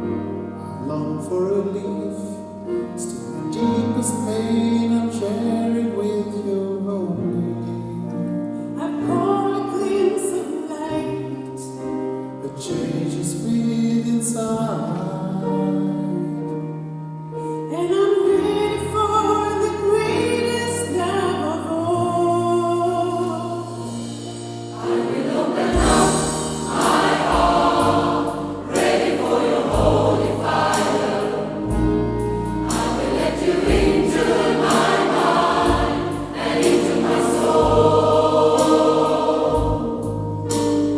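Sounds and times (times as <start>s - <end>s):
gospel choir singing with band: 23.3s - 40.9s.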